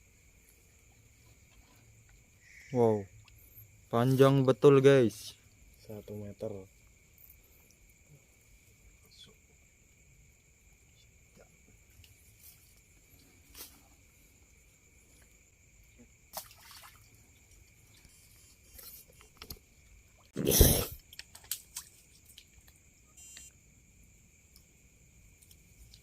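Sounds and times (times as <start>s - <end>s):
loud splash: 16.3s - 17.1s
water splashing and dripping: 16.3s - 18.2s, 19.1s - 22.8s.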